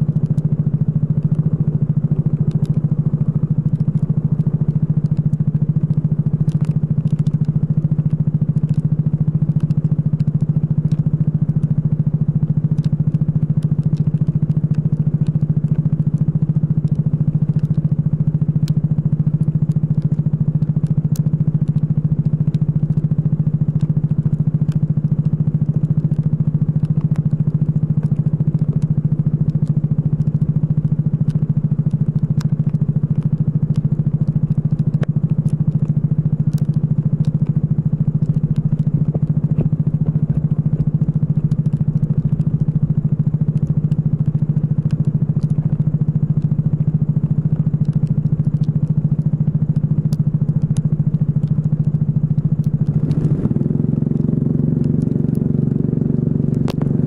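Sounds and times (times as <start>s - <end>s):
light ticks: 0.0s - 57.0s
kart engine running: 37.4s - 57.0s.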